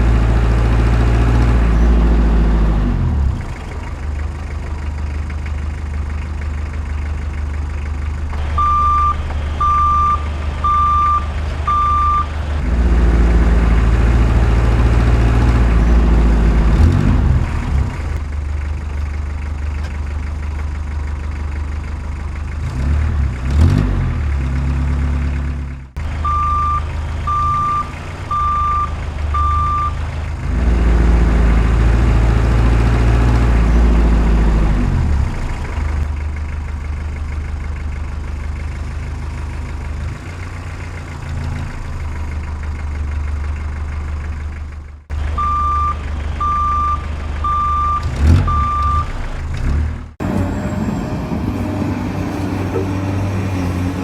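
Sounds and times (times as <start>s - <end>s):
heavy truck engine running: 0.0s - 54.0s
reversing alarm beeping: 8.4s - 12.3s, 26.2s - 30.0s, 45.4s - 49.1s.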